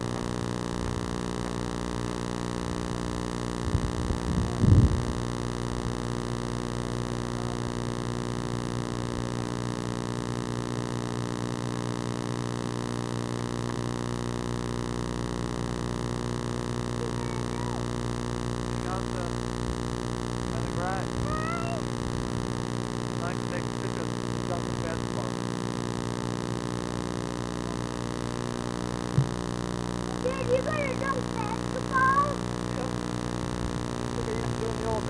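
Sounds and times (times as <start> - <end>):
electrical hum: 0.0 - 35.0
low thumps and rumble: 29.1 - 29.6.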